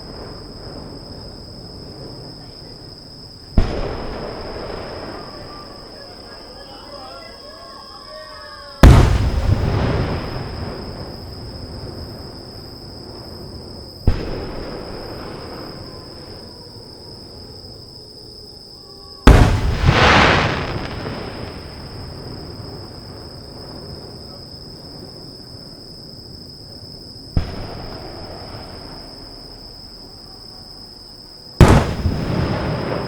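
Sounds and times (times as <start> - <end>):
fireworks booming: 0.0 - 7.4, 8.8 - 17.9, 19.2 - 33.0
small firework bang: 2.0 - 6.4, 8.8 - 12.4, 14.0 - 16.5, 19.2 - 24.5, 27.3 - 30.2, 31.6 - 33.0.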